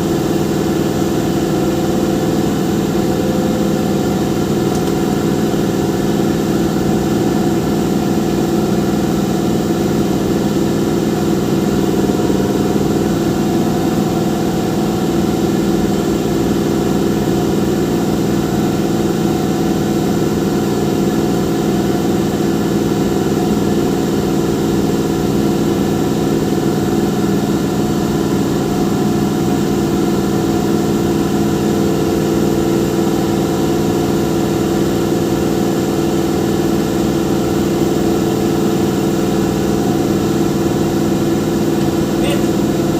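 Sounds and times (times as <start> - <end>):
engine idling: 0.0 - 42.9.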